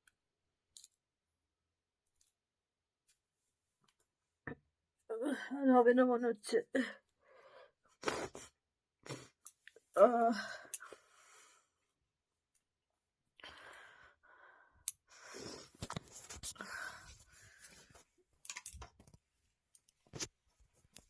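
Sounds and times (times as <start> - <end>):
woman breathing and sighing: 6.8 - 11.8, 13.4 - 18.0.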